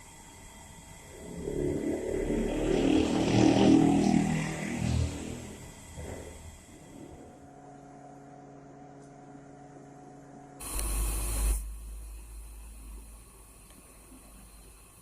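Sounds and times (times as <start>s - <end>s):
loud rushing noise with rumble: 1.1s - 7.4s.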